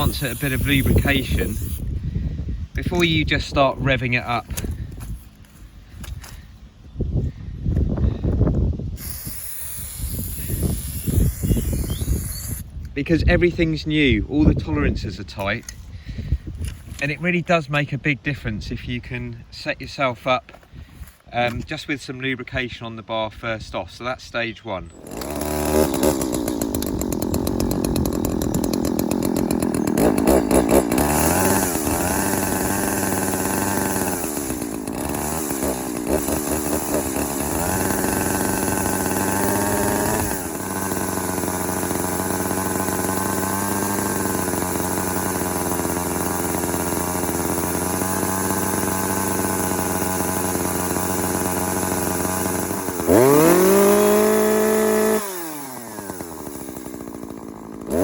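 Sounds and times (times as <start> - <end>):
chainsaw idling and revving: 0.0 - 1.9, 2.8 - 6.5, 8.9 - 13.6, 24.9 - 58.0.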